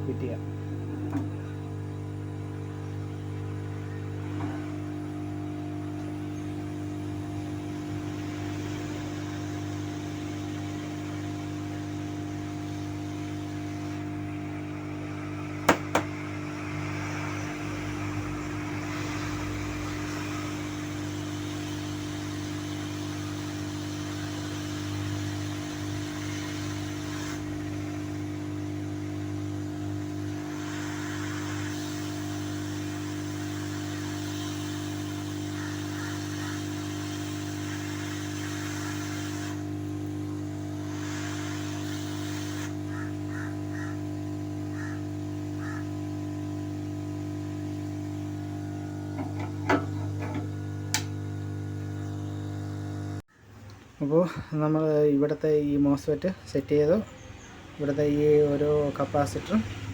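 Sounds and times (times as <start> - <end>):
hot air blower whirring: 0.0 - 53.3, 57.8 - 59.9.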